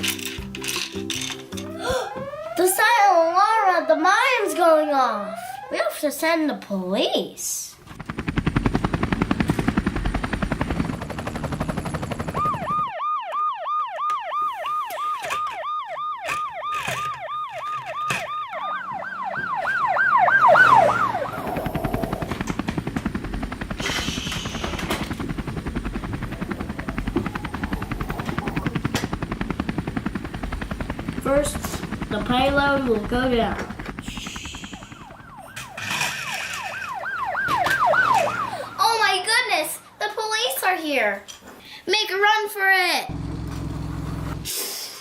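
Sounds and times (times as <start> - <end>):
helicopter rotor chopping: 0.1 - 6.4, 7.7 - 13.1, 14.9 - 40.9, 43.1 - 44.5
yelping police siren: 1.6 - 6.1, 12.3 - 22.6, 23.9 - 29.4, 33.6 - 40.1.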